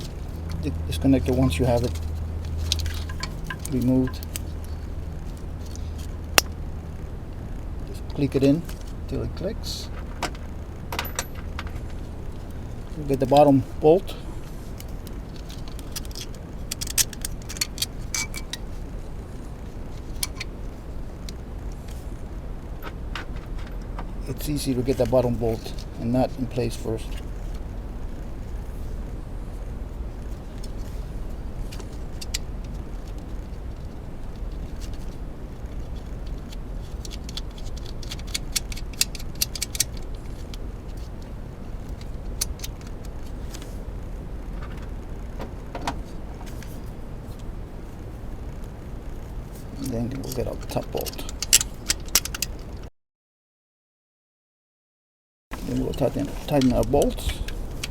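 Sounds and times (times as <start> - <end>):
metal bolt and nut clinking: 0.0 - 4.9, 9.9 - 12.0, 15.3 - 18.7, 36.3 - 40.6
low steady hum: 0.0 - 52.9, 55.5 - 57.9.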